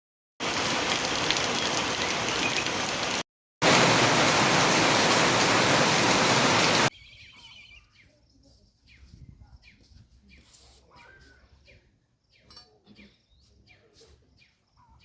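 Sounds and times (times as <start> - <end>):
heavy rain falling: 0.4 - 6.9
faint bird chirps: 6.9 - 15.0.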